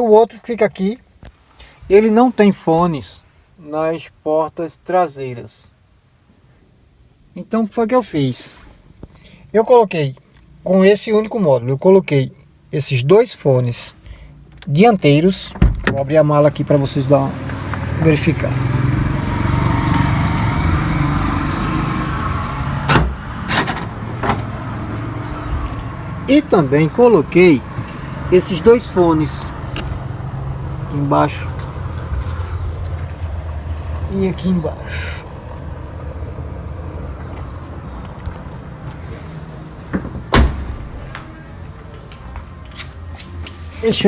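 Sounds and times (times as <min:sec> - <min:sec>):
low rumble of traffic: 0:00.0 - 0:44.0
trunk latch and lid clicks: 0:15.5 - 0:16.1, 0:22.9 - 0:24.5, 0:29.7 - 0:30.0, 0:39.9 - 0:41.3
car engine running: 0:15.8 - 0:41.5
loud thump: 0:22.8 - 0:24.5, 0:39.9 - 0:41.3.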